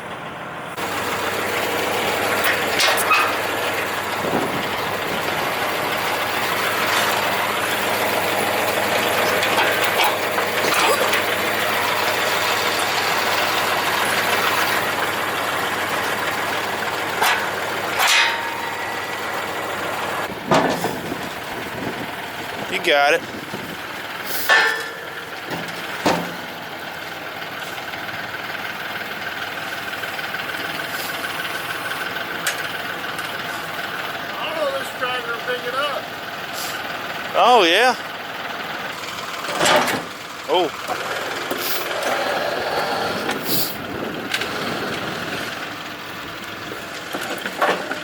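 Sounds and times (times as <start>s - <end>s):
tractor engine idling: 0.0s - 48.0s
sharp knocks and clanks: 2.3s - 5.3s, 8.7s - 11.3s, 17.1s - 19.4s, 20.2s - 21.3s, 24.4s - 26.6s, 39.4s - 40.2s, 47.1s - 48.0s.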